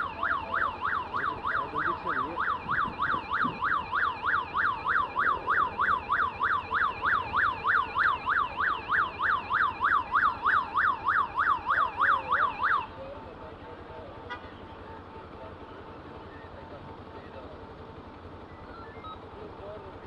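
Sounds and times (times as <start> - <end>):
siren yelping: 0.0 - 13.0, 18.4 - 19.5.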